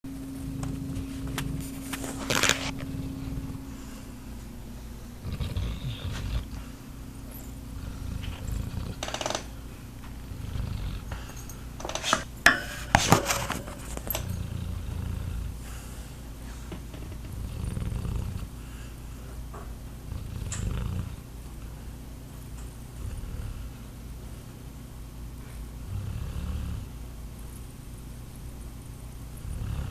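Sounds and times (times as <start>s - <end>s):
person snoring: 5.2s - 6.6s.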